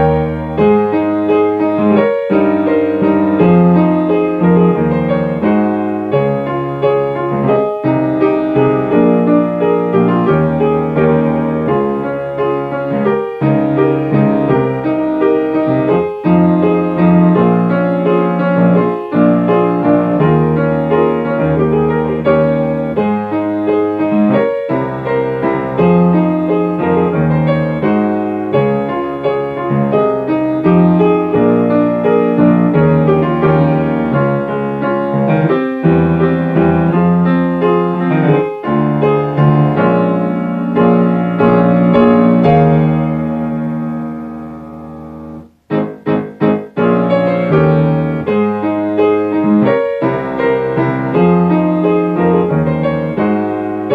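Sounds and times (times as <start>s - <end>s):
piano playing flowing chords: 0.0s - 53.9s.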